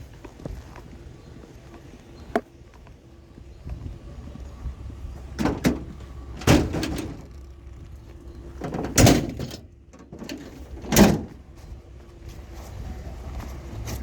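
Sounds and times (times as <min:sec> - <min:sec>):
hard bangs and clunks: 0:05.3 - 0:11.5.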